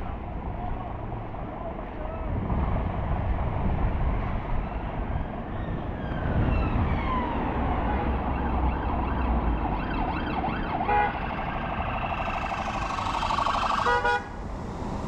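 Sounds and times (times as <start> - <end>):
engine and traffic rumble: 0.0 - 15.0
emergency vehicle siren: 4.6 - 14.4.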